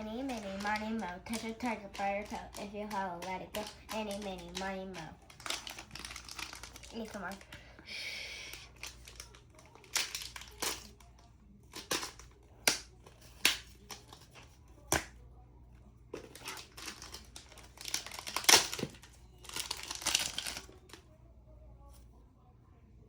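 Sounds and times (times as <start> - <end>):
packaging crinkling and ripping: 0.0 - 7.6, 8.4 - 15.0, 16.2 - 21.0
packaging rustling: 0.0 - 7.6, 16.2 - 21.0.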